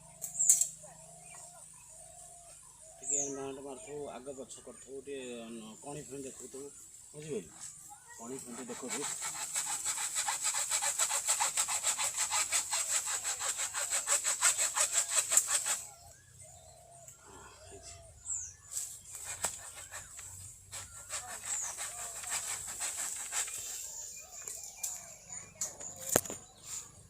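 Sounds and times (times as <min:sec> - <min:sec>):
faint bird chirps: 0:00.0 - 0:09.0, 0:15.5 - 0:27.0
hand saw cutting wood: 0:08.3 - 0:16.1, 0:19.1 - 0:24.0.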